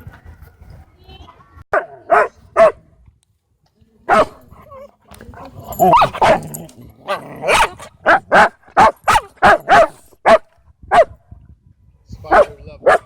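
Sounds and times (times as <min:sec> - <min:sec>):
dog barking: 0:01.7 - 0:02.8, 0:04.1 - 0:04.4, 0:05.8 - 0:06.5, 0:07.1 - 0:11.2, 0:12.3 - 0:13.0.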